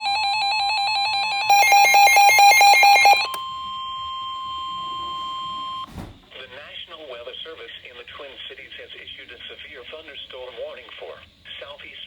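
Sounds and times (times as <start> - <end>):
rapid electronic alarm beeping: 0.0 - 5.9.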